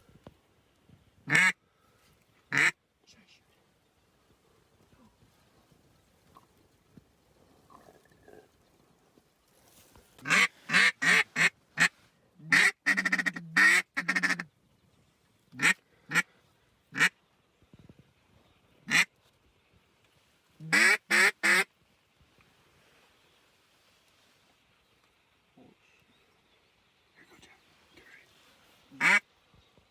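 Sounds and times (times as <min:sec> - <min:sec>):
duck call quacking: 0:01.3 - 0:01.6, 0:02.5 - 0:02.8, 0:10.2 - 0:11.9, 0:12.5 - 0:14.4, 0:15.6 - 0:16.2, 0:16.9 - 0:17.1, 0:18.9 - 0:19.1, 0:20.7 - 0:21.7, 0:29.0 - 0:29.2.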